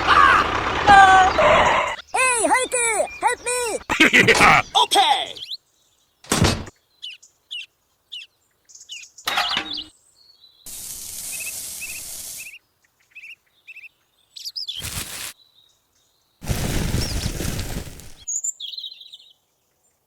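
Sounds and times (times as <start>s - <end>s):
small birds chirping: 1.2s - 6.2s, 6.8s - 19.6s
steady hiss: 10.7s - 12.5s.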